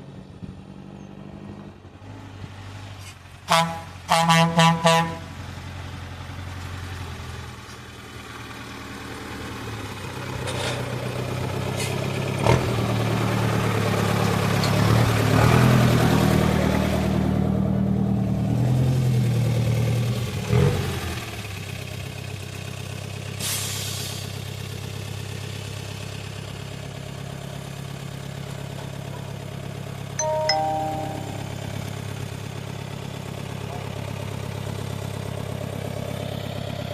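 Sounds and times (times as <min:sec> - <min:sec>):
short pitched tone: 0:30.2 - 0:32.1
vehicle engine running: 0:31.6 - 0:36.9.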